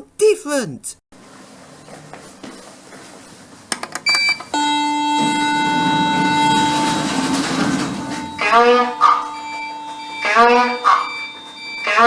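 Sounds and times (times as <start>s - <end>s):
lift electronic bell ringing: 4.6s - 12.0s
short high beep: 8.0s - 12.0s.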